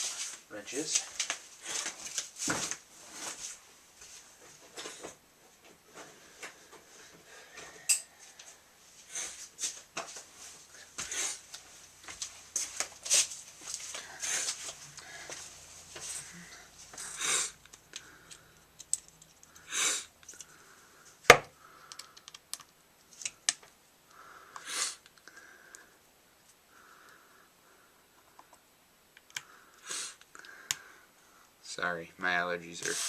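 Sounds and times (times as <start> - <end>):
person sniffing: 10.9 - 11.5, 16.0 - 17.6, 19.6 - 20.1, 24.4 - 25.1, 29.8 - 30.8.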